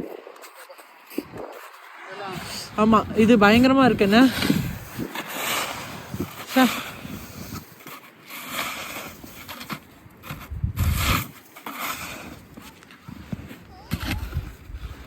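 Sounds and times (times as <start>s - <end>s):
footsteps crunching in snow: 0.0s - 15.0s.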